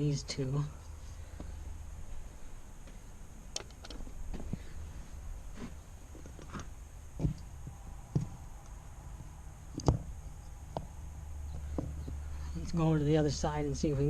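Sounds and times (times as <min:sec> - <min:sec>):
steady low rumble: 0:00.0 - 0:14.0
knocks and clicks of parts: 0:07.2 - 0:08.4, 0:09.7 - 0:10.1.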